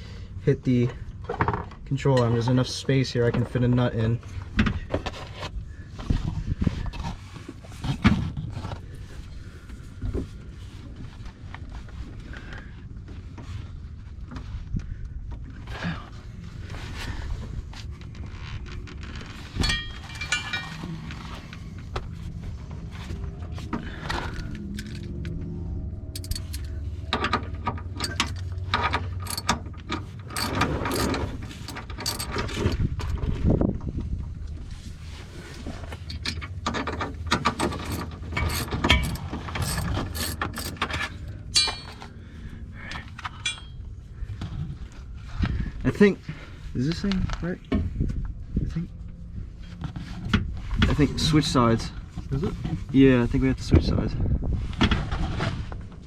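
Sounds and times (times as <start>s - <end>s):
hand tools knocking and clunking: 26.2s - 26.7s, 28.0s - 28.4s, 29.3s - 29.6s, 30.4s - 32.8s, 37.5s - 40.8s
metal scraping on metal: 26.2s - 26.7s, 28.0s - 28.5s, 29.2s - 29.6s, 30.3s - 32.8s, 37.5s - 40.9s
socket ratchet clicking: 26.2s - 26.7s, 28.0s - 28.5s, 29.2s - 29.6s, 30.3s - 32.7s, 37.6s - 40.8s.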